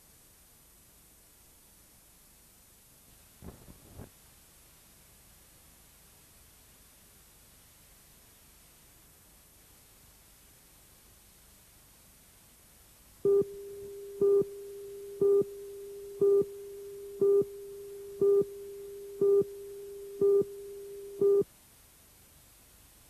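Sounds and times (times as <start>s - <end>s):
electronic beeps: 13.3s - 21.4s
low steady tone: 13.3s - 21.4s.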